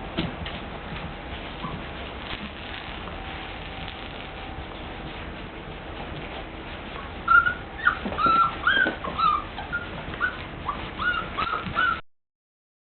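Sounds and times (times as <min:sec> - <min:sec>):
puppies whimpering: 0:06.9 - 0:12.0.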